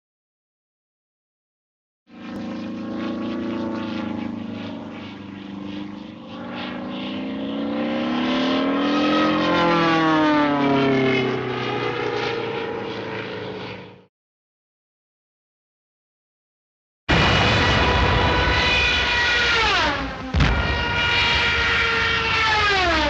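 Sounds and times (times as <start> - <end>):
cartoon engine-like drone: 2.1 - 14.1, 17.1 - 23.0.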